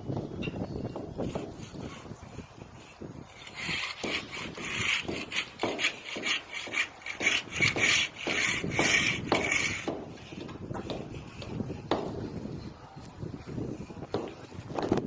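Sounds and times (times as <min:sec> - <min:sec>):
rough scraping strokes: 0:01.2 - 0:12.0.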